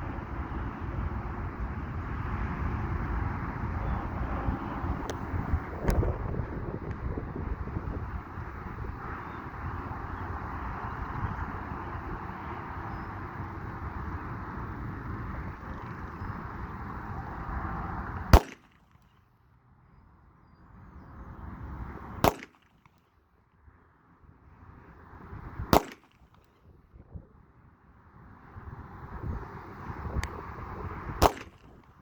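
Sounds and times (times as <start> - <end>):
wind on microphone: 0.0 - 18.4, 28.4 - 32.0
pistol shots: 18.4 - 18.8, 22.2 - 22.8, 25.7 - 26.2, 31.2 - 31.8.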